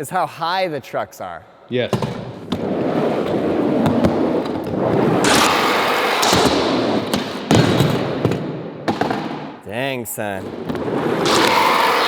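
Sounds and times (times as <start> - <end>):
skateboard rolling on concrete: 2.4 - 9.3, 10.6 - 12.0.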